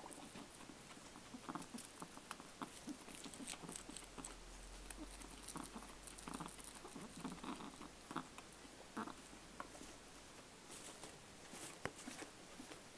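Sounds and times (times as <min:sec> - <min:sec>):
pet chewing and clicking: 0:00.0 - 0:09.1.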